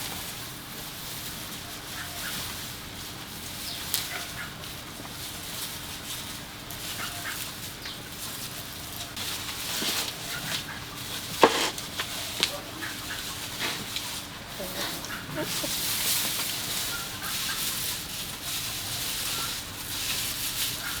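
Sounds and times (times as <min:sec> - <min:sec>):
animal calls: 0:01.7 - 0:02.6, 0:03.6 - 0:04.7, 0:06.8 - 0:09.2, 0:09.8 - 0:19.8, 0:20.7 - 0:21.0.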